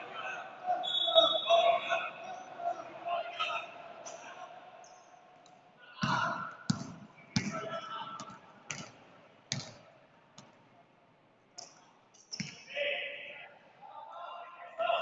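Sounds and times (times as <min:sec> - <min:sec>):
basketball bouncing on court floor: 0:06.0 - 0:09.8, 0:12.3 - 0:12.6.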